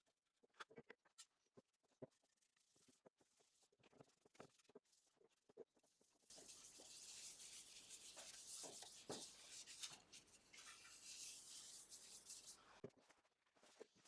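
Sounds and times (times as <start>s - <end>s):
hand rubbing wooden bowl: 6.3s - 12.8s.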